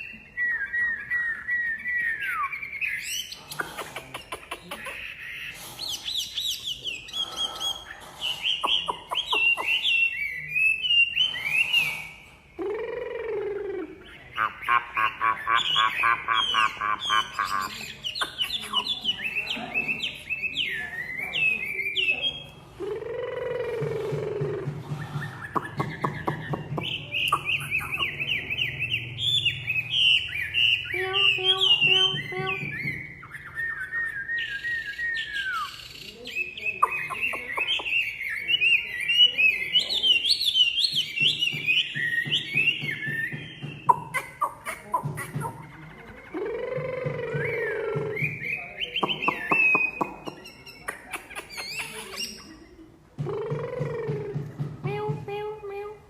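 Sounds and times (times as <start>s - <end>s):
bird singing whistles: 0.0s - 3.5s, 25.0s - 44.8s, 47.2s - 52.6s.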